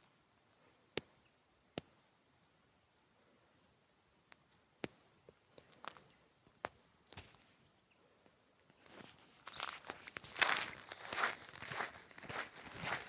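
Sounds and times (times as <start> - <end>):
footsteps: 8.8 - 13.0.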